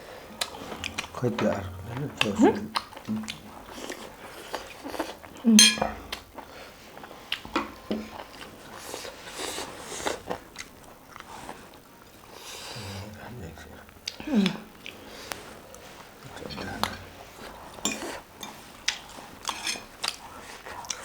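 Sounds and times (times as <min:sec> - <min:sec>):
chewing and biting food: 0:00.4 - 0:05.5, 0:06.1 - 0:12.6, 0:18.8 - 0:21.0.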